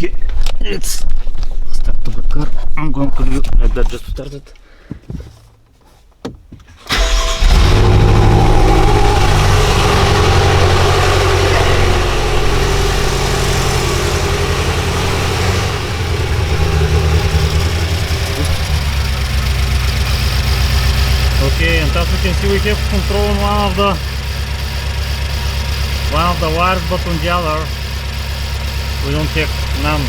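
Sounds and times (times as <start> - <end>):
car engine starting and misfiring: 6.6 - 30.0.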